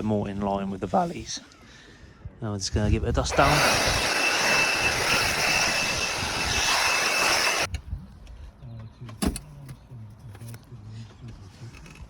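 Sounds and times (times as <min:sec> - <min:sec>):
blower rushing blast: 0:03.2 - 0:07.7.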